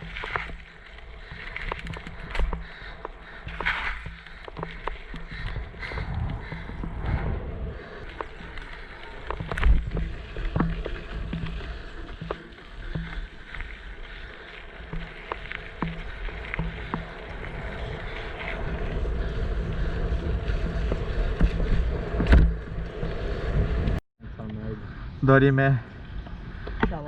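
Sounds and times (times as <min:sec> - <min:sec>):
bike rattles and knocks: 0:00.0 - 0:06.9, 0:07.9 - 0:24.0
bicycle tyre rumble: 0:00.0 - 0:27.0
wind on microphone: 0:03.6 - 0:11.9.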